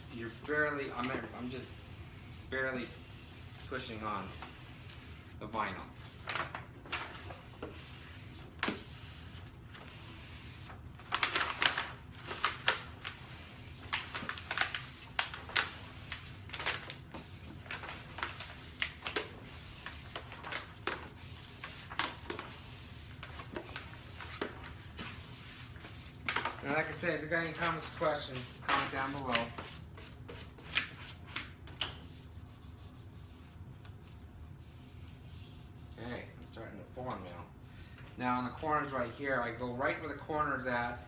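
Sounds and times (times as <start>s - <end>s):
low room hum: 0.0s - 41.0s
vinyl film crackling and crinkling: 10.7s - 29.6s.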